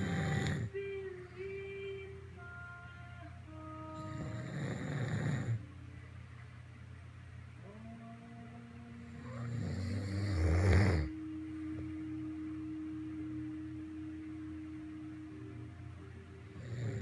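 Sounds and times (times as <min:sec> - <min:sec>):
pet snoring: 0:00.0 - 0:00.7, 0:04.0 - 0:05.6, 0:09.1 - 0:11.2, 0:16.5 - 0:17.0.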